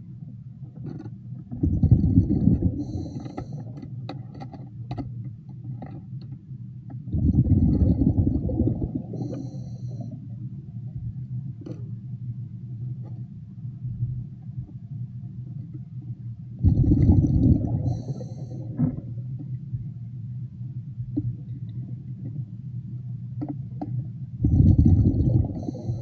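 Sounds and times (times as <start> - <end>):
steady low hum: 0.0 - 26.0
exhaled bubbles underwater: 1.5 - 3.8, 7.1 - 10.2, 16.6 - 19.6, 24.4 - 26.0.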